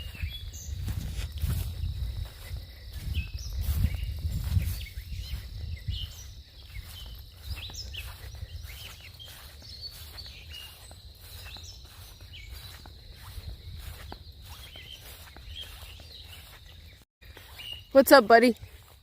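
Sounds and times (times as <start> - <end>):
low wind rumble: 0.0 - 8.8
high insect drone: 0.0 - 16.8
birds chirping: 0.0 - 19.0.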